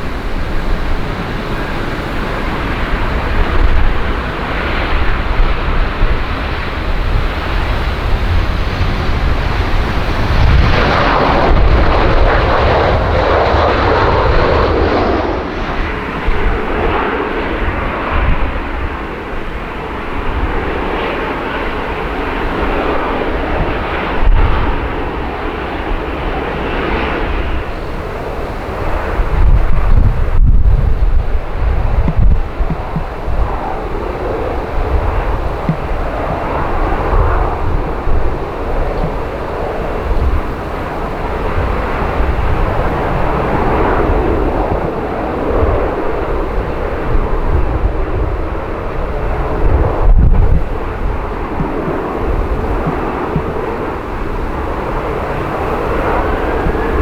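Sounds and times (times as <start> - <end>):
jet airliner engine noise: 0.0 - 57.0
wind buffeting microphone: 0.0 - 57.0.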